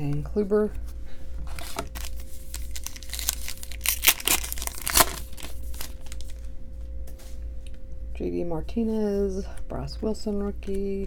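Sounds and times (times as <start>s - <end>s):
foil pack crinkling: 1.5s - 6.5s.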